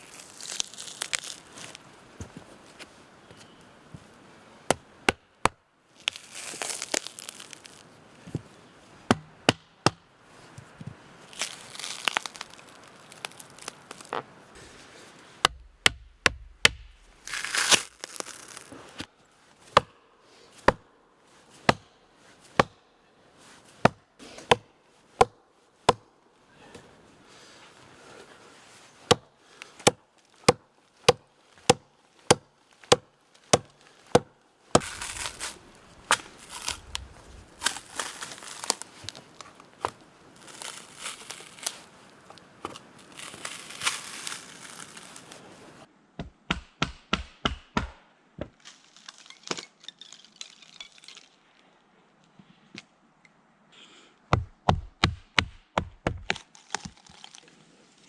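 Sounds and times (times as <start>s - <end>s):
wood tearing and crackling: 0.0s - 1.8s, 6.0s - 7.9s, 11.3s - 14.4s, 16.6s - 19.1s, 31.6s - 45.5s, 48.6s - 51.6s, 56.2s - 58.0s
axe chopping wood: 9.1s - 10.0s, 15.4s - 18.2s, 19.7s - 20.0s, 20.6s - 20.9s, 21.6s - 22.8s, 23.8s - 26.1s, 29.1s - 38.8s, 46.2s - 48.5s, 54.3s - 57.2s.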